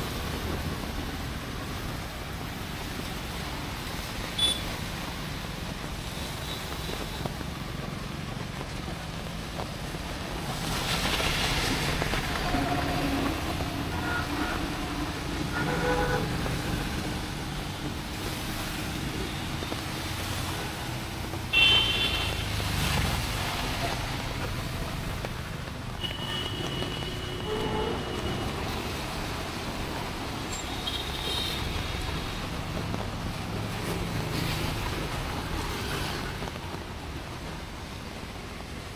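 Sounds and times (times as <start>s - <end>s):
vehicles passing: 0.0s - 38.9s
car horn beep: 4.3s - 4.8s, 13.9s - 14.8s, 15.5s - 16.3s, 21.5s - 22.6s, 26.0s - 28.5s.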